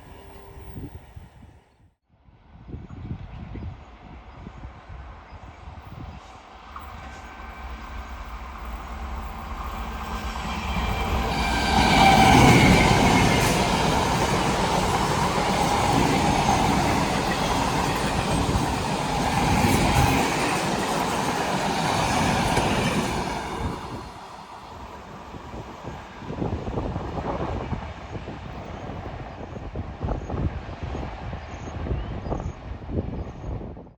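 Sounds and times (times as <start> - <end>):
train wheels on rails: 5.7 - 31.4.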